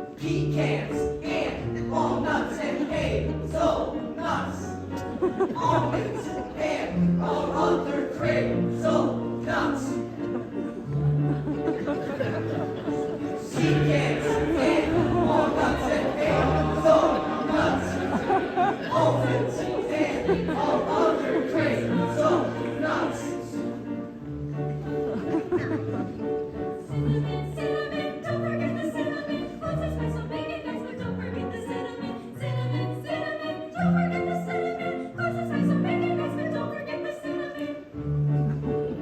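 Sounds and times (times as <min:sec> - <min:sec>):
choir singing: 0:00.0 - 0:25.6, 0:26.7 - 0:38.0.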